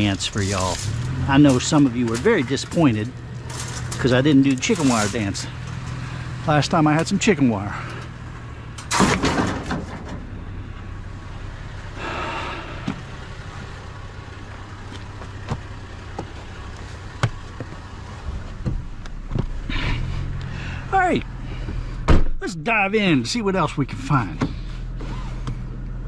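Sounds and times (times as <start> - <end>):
truck engine idling: 0.0 - 26.0
loud rattling clatter: 8.9 - 10.3.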